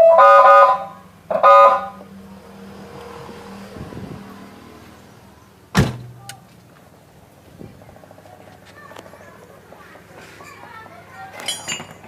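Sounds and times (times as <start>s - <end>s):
multi-tone bus horn blasts: 0.0s - 2.3s.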